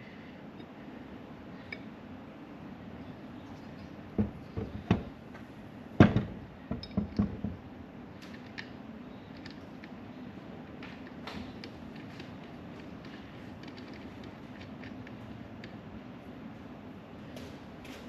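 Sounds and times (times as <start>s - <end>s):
steady low hum: 0.0s - 18.0s
metal tools knocking and clinking: 6.0s - 7.6s.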